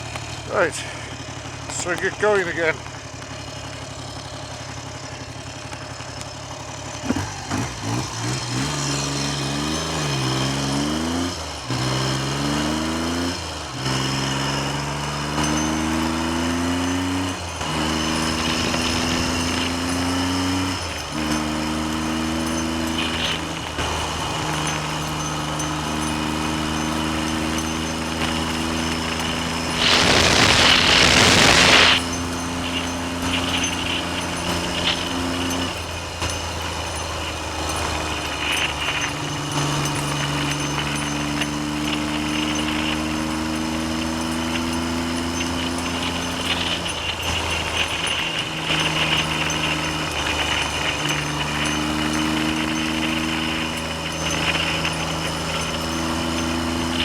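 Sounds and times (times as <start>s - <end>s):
motorcycle engine running: 0.0s - 57.0s
wind noise on microphone: 28.2s - 35.9s
loud rushing noise: 29.0s - 35.2s.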